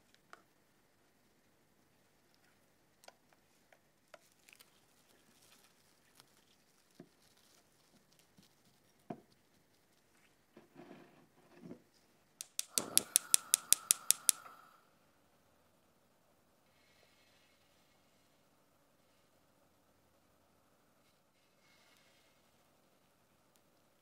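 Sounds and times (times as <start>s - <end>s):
kitchen clicks and taps: 12.4s - 14.6s
rapid sharp clicks: 12.4s - 14.6s.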